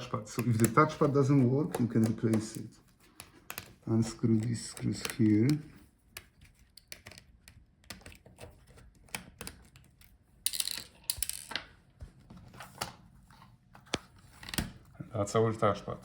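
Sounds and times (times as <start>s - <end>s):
small parts being handled: 8.0s - 11.7s.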